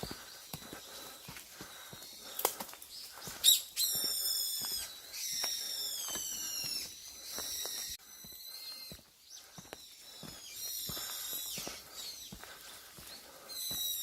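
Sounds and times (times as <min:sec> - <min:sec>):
footsteps on forest path: 0:00.0 - 0:14.0
bird calling loudly: 0:03.0 - 0:14.0.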